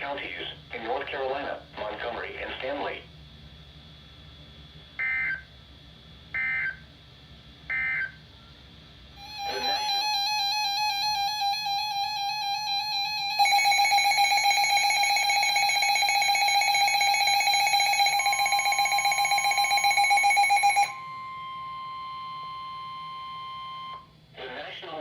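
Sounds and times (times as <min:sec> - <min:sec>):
steady warning alert tone: 0:09.2 - 0:24.0
pulsing alarm buzz: 0:09.2 - 0:24.2.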